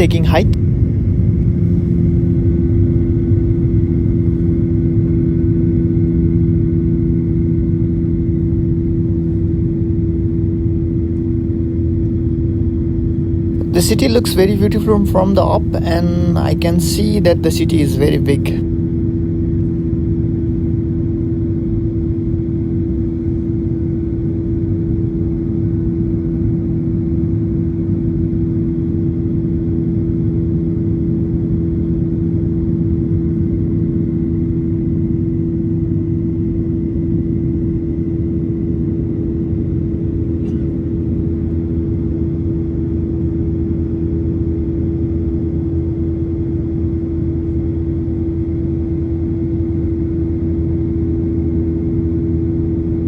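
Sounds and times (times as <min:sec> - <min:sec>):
even hum: 0:00.0 - 0:53.0
jet engine cabin rumble: 0:00.0 - 0:53.0.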